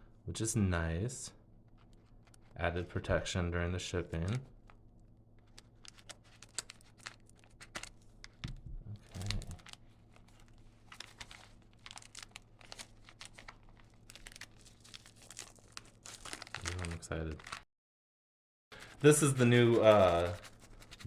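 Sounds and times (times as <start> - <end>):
packaging tearing: 5.4 - 8.4, 9.0 - 17.6
packaging crinkling and rustling: 5.4 - 17.6.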